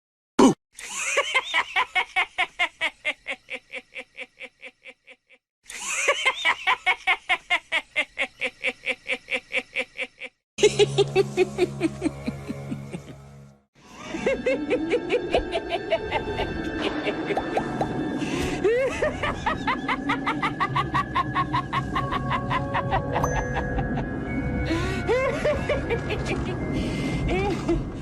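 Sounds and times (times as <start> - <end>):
man cackling maniacally: 18.6 - 24.0.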